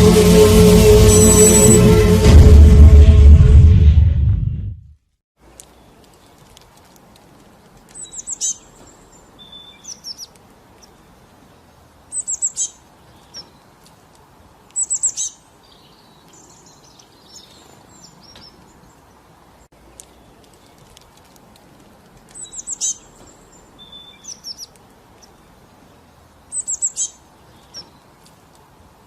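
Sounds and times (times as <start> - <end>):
small songbird chirping: 7.9 - 13.7, 14.7 - 19.2, 22.3 - 28.2.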